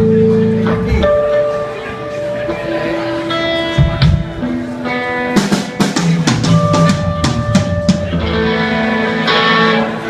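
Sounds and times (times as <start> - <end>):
electric guitar notes: 0.0 - 10.0
drum kit hits: 5.4 - 8.6.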